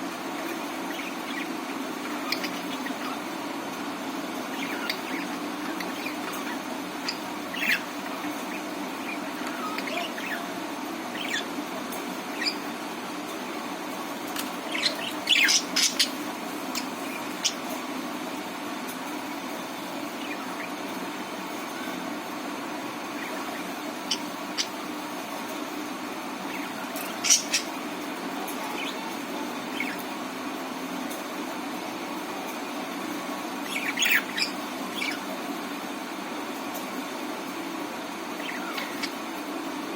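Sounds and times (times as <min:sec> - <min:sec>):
steady background hum: 0:00.0 - 0:39.9
budgerigars chirping: 0:00.4 - 0:03.3, 0:04.5 - 0:11.6, 0:12.3 - 0:12.7, 0:14.6 - 0:17.8, 0:23.0 - 0:25.0, 0:26.4 - 0:27.9, 0:28.6 - 0:30.2, 0:33.6 - 0:35.3, 0:38.3 - 0:39.4.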